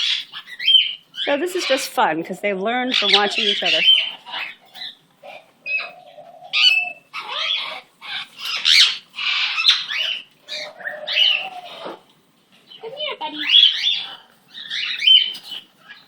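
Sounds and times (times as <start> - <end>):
cockatiels squawking and chirping: 0.0 - 2.1, 2.9 - 12.1, 12.7 - 16.0.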